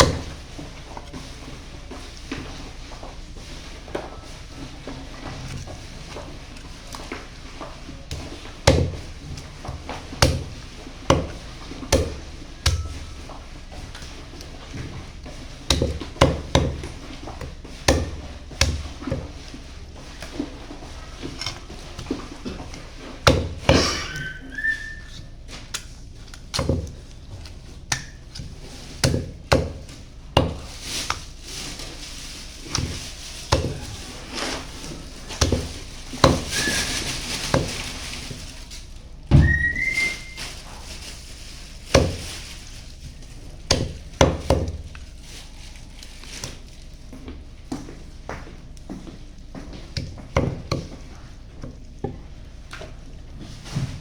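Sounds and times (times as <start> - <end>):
short whistle-like tone: 24.2 - 25.2, 39.4 - 40.4.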